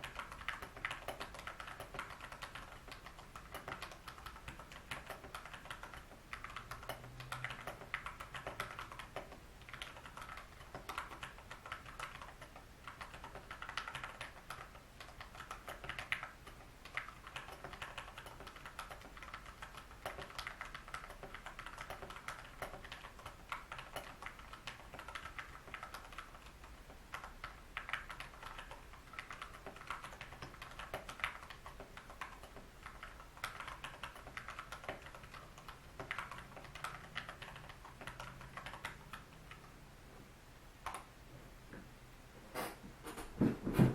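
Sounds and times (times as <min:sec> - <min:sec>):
mechanical keyboard typing: 0:00.0 - 0:39.7, 0:40.8 - 0:41.1.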